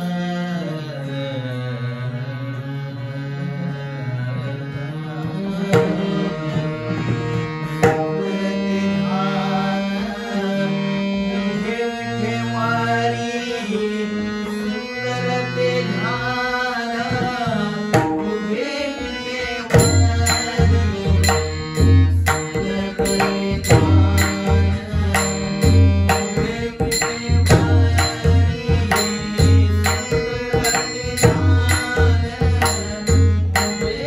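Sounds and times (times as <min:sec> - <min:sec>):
person singing devotional song: 0:00.0 - 0:34.0
held accompanying notes: 0:02.3 - 0:08.8, 0:15.5 - 0:34.0.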